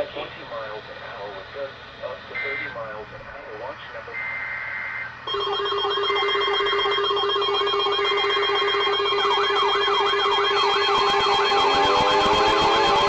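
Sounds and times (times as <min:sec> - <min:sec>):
buzzy alert data bursts: 0:04.1 - 0:13.0
warbling alert tone: 0:05.3 - 0:13.0.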